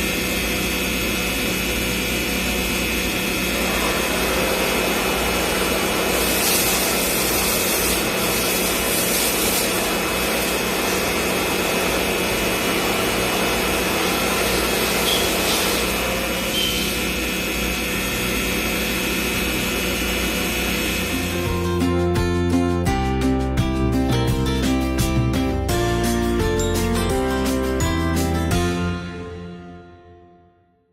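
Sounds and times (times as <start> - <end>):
milling machine drone: 0.0 - 21.9
cutting hiss: 5.6 - 10.6.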